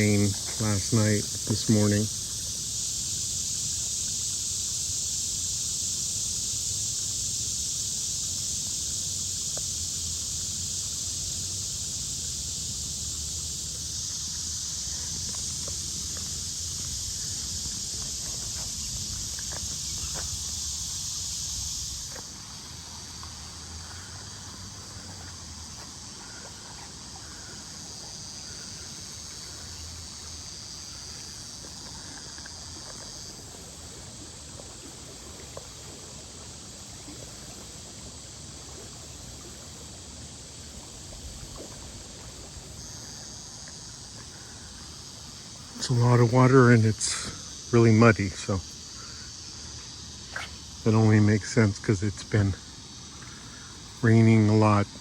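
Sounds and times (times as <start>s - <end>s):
cicada chorus: 0.0s - 55.0s
faint chirps and ticks: 9.4s - 11.0s, 40.2s - 50.8s, 51.4s - 55.0s.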